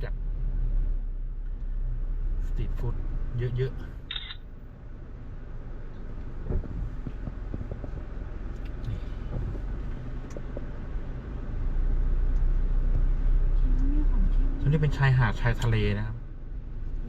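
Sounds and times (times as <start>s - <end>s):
car engine and road rumble: 0.0s - 17.0s
small knocks and rattles: 6.4s - 10.7s.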